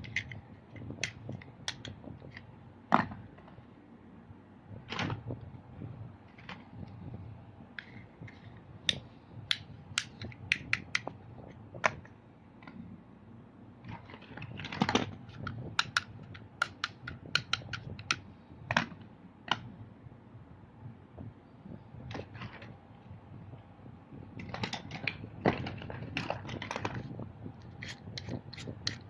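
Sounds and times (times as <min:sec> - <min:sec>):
low steady rumble: 0:00.0 - 0:29.0
hard objects clicking and clacking: 0:14.1 - 0:18.9, 0:27.6 - 0:29.0.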